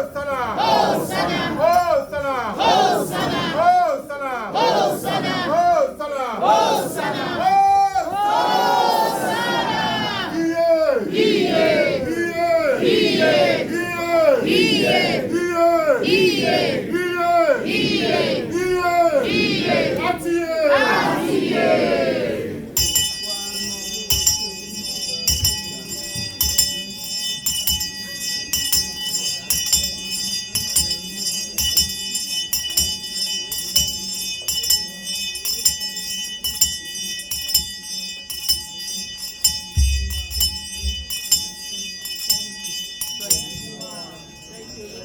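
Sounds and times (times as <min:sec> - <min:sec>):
congregation voices: 0:00.0 - 0:36.1
metallic jingling: 0:22.8 - 0:45.0
low drum beats: 0:39.8 - 0:41.2.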